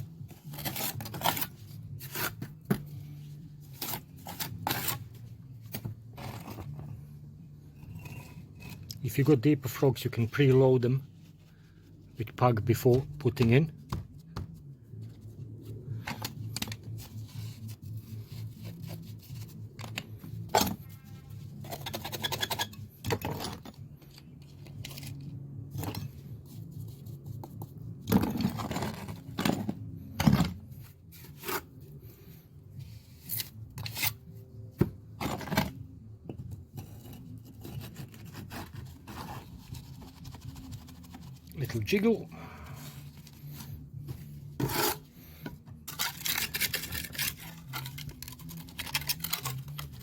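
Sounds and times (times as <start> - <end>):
trowel scraping wet mortar: 3.8 - 5.1, 44.6 - 45.1.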